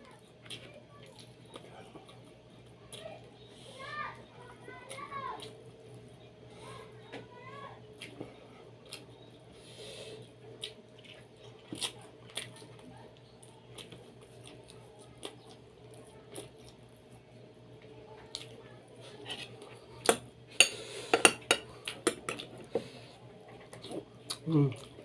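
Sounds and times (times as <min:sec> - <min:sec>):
dishes and utensils clinking: 0:20.6 - 0:22.4.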